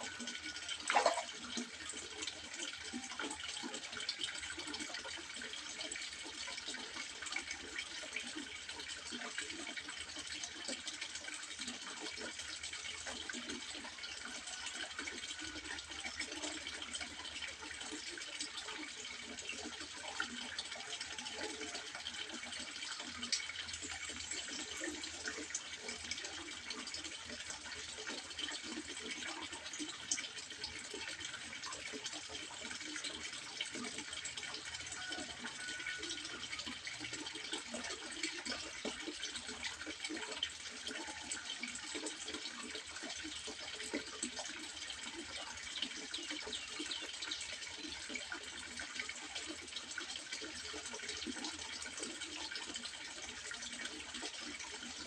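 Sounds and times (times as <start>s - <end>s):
water trickling into pond: 0.0s - 55.0s.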